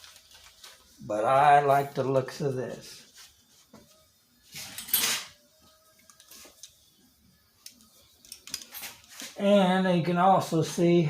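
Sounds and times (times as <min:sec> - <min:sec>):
small tools clicking and clinking: 0:07.6 - 0:09.2.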